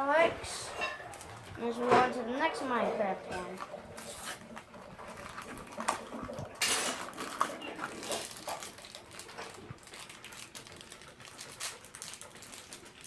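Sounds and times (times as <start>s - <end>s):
plastic package tearing and crinkling: 5.2s - 13.0s.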